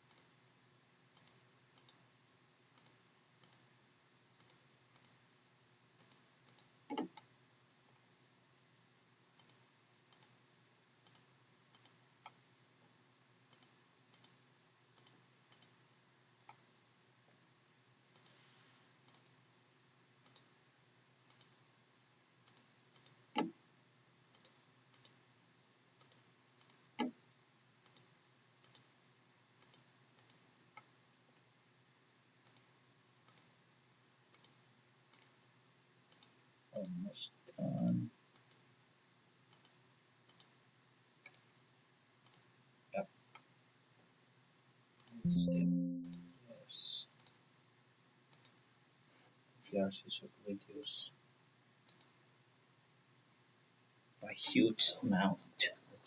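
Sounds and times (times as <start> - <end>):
computer mouse clicking: 0.0 - 0.3, 1.2 - 2.0, 2.8 - 3.7, 4.4 - 5.2, 6.0 - 7.3, 9.4 - 10.4, 11.0 - 12.4, 13.5 - 14.4, 15.0 - 15.8, 18.1 - 18.4, 19.0 - 19.3, 20.2 - 20.5, 21.3 - 21.6, 22.4 - 23.6, 24.3 - 25.2, 26.0 - 27.2, 27.8 - 28.9, 29.6 - 30.9, 32.4 - 33.5, 34.3 - 35.4, 36.1 - 37.0, 37.8 - 38.6, 39.5 - 40.6, 41.2 - 41.5, 42.2 - 42.5, 45.0 - 45.2, 47.2 - 47.4, 48.3 - 48.6, 51.9 - 52.2
brief hiss: 18.3 - 18.9.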